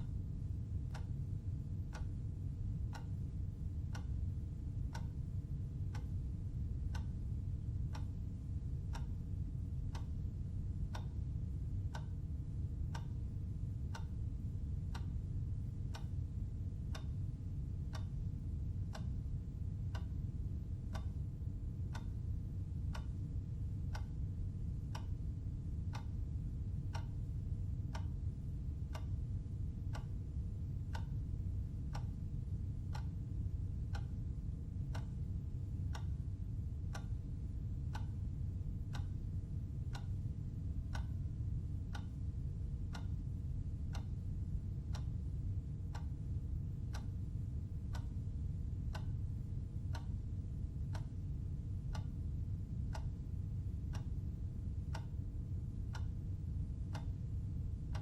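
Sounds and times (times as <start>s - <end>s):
clock ticking: 0.8s - 2.2s, 3.8s - 10.2s, 10.9s - 12.2s, 13.9s - 16.2s, 16.9s - 19.2s, 19.8s - 20.2s, 20.9s - 22.2s, 22.8s - 25.2s, 26.9s - 29.2s, 29.9s - 34.3s, 34.9s - 35.3s, 35.9s - 36.2s, 36.9s - 42.2s, 42.9s - 44.2s, 44.8s - 47.2s, 47.9s - 50.2s, 50.8s - 52.2s, 52.9s - 53.2s, 53.9s - 54.3s, 54.9s - 55.2s, 55.9s - 56.2s, 56.9s - 58.0s.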